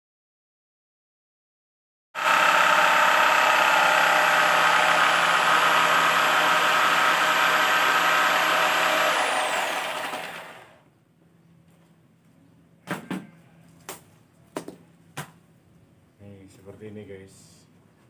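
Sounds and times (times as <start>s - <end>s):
power tool whining and winding down: 2.2s - 10.8s.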